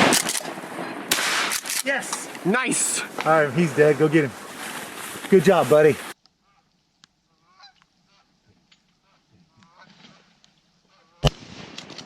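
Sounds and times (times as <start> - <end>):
shotgun blast: 0.0 - 1.7, 11.2 - 12.0
faint duck quacking: 6.4 - 11.3.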